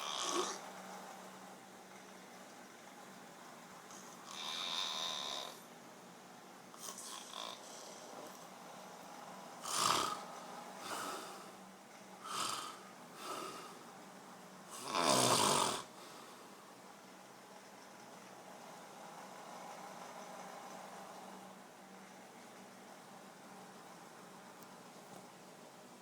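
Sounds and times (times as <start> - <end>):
person snoring loudly: 0.0 - 0.6, 4.2 - 5.6, 6.8 - 8.1, 9.6 - 11.5, 12.2 - 13.8, 14.7 - 15.9.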